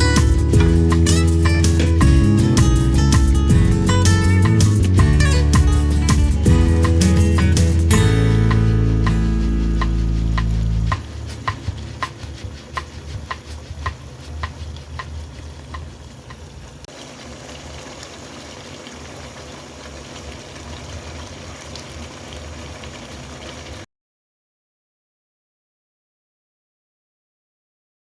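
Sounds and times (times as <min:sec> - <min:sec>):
chicken sizzling in a pan: 0:00.0 - 0:23.8
utensil clicking against pan: 0:08.5 - 0:16.5.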